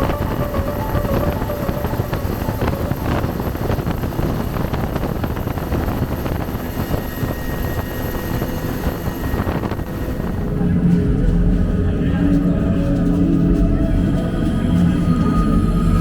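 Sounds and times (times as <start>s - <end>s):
helicopter rotor and engine: 0.0s - 10.5s.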